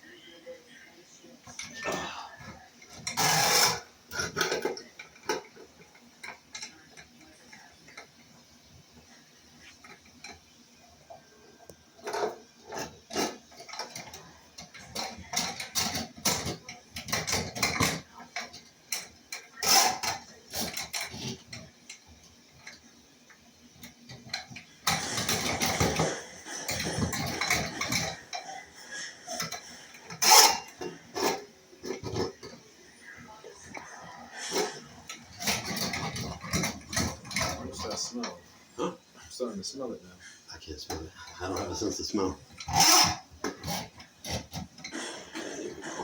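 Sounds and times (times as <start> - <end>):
metallic clanks and rattles: 23.8 - 28.5, 34.5 - 38.4.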